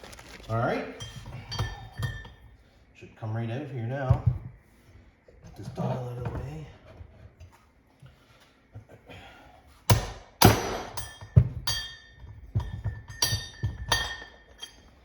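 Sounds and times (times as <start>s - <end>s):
hammer striking metal: 9.9s - 12.2s, 13.1s - 14.8s.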